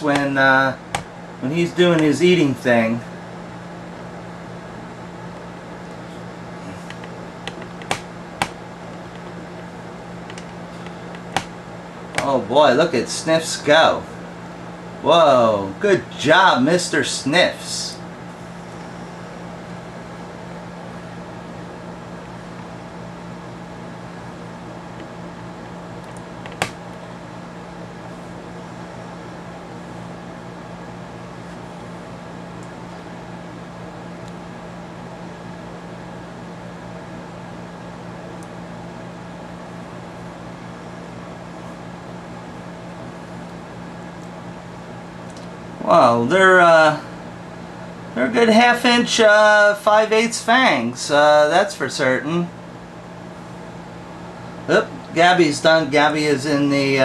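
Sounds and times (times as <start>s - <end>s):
low hum of room equipment: 0.0s - 57.0s
sharp clicks: 26.0s - 26.8s.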